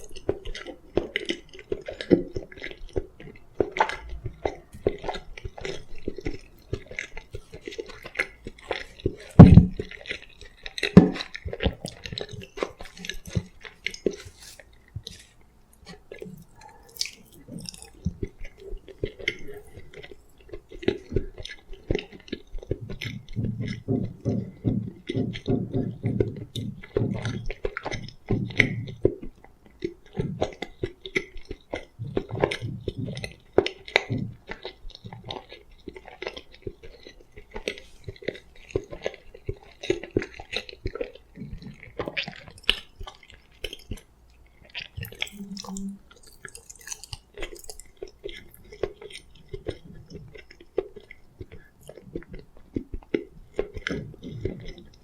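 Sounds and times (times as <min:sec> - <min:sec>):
person chewing food: 0:00.0 - 0:55.0.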